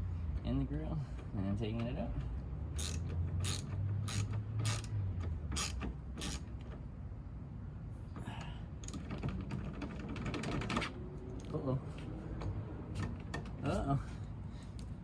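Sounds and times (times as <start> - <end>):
hand ratchet clicking: 2.8 - 6.7.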